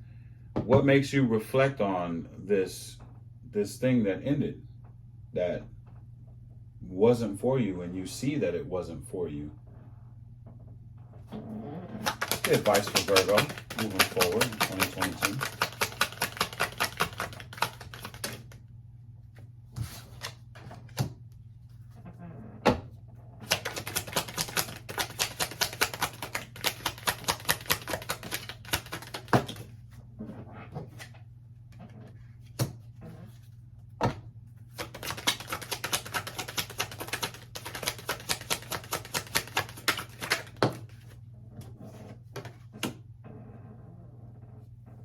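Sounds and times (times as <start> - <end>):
cards being shuffled: 12.0 - 18.6, 19.7 - 21.1, 23.4 - 30.0, 34.7 - 41.2, 41.9 - 42.9
sharp card taps: 12.0 - 18.6, 23.4 - 29.7, 34.8 - 40.9.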